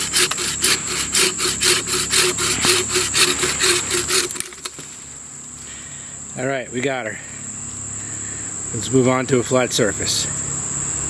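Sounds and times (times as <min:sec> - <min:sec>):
hand saw cutting wood: 0:00.0 - 0:05.1.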